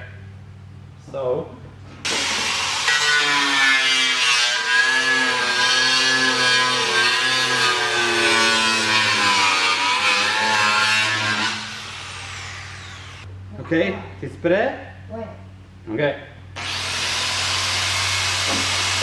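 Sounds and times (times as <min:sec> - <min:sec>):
angle grinder cutting plastic: 0:02.1 - 0:13.3, 0:16.6 - 0:19.0.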